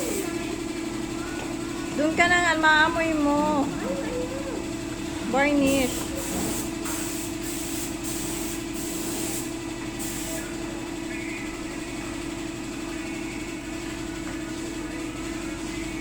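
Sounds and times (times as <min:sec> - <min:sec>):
compressor running: 0:00.0 - 0:16.0
spray gun hissing: 0:05.7 - 0:10.5.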